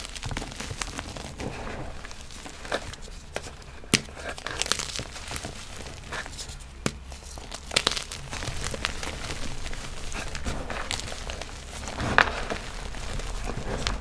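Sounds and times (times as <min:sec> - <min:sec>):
chalk cracking and crumbling: 0:00.0 - 0:14.0.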